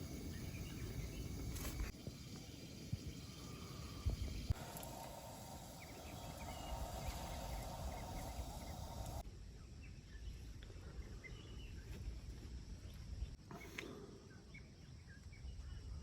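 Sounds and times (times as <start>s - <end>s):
steady hiss: 0.0s - 9.2s
low wind rumble: 0.0s - 13.4s
faint birds chirping: 0.0s - 16.0s.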